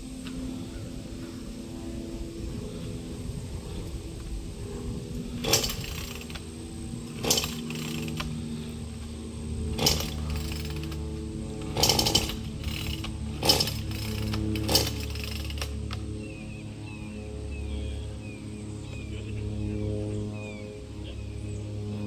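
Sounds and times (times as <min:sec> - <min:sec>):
chainsaw engine running: 0:02.5 - 0:16.4
chainsaw revving bursts: 0:05.0 - 0:16.1.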